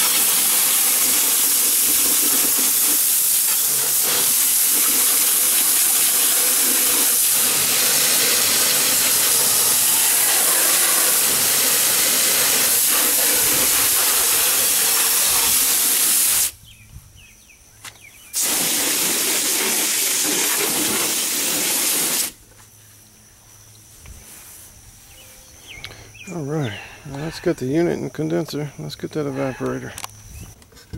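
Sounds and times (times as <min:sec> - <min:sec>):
water spraying from hose nozzle: 0:00.0 - 0:16.5, 0:18.4 - 0:22.4.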